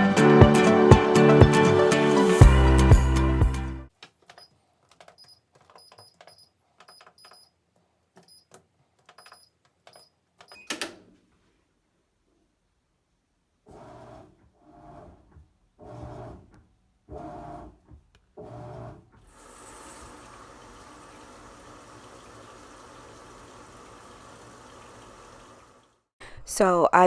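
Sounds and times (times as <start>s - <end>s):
water running: 19.3s - 26.7s.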